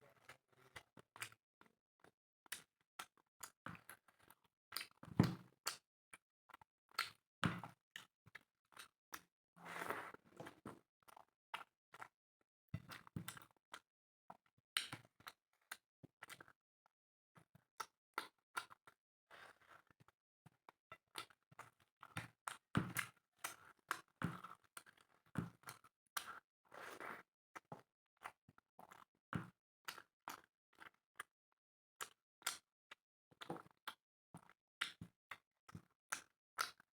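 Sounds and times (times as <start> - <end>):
wet chewing and mouth smacks: 4.7 - 5.0.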